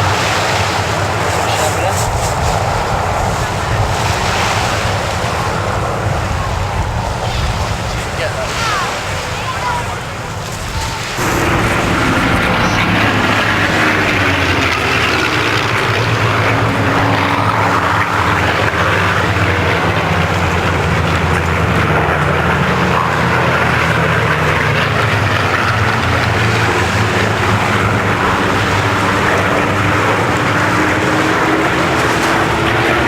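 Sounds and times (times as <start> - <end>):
propeller planes droning past: 0.0 - 33.0.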